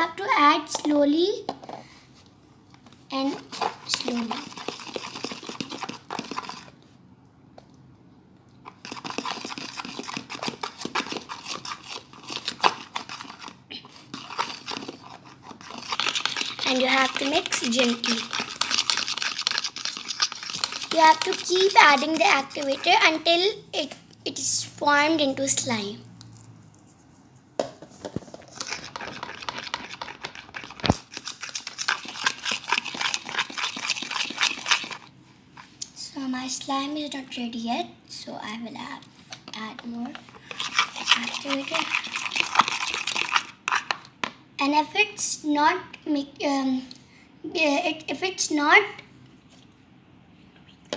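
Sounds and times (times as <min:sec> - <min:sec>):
fork stirring sticky slime: 0:03.1 - 0:06.8, 0:08.6 - 0:25.9, 0:28.0 - 0:35.9, 0:38.6 - 0:45.1.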